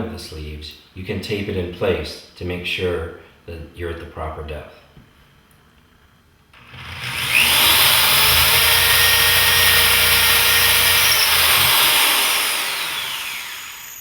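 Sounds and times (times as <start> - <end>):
power drill boring into wood: 6.6 - 14.0.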